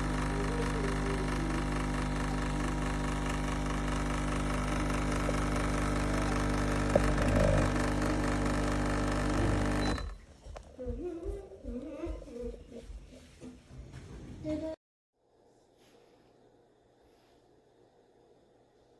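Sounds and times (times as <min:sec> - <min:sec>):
espresso machine pump humming: 0:00.0 - 0:10.2.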